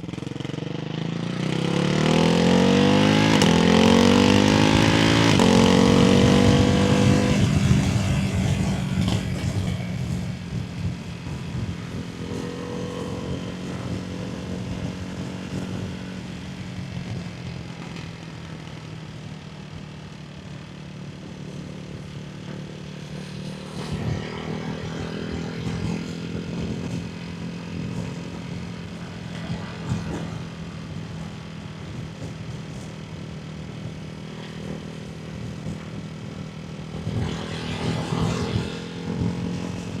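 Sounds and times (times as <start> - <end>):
motorcycle engine droning: 0.0 - 40.0.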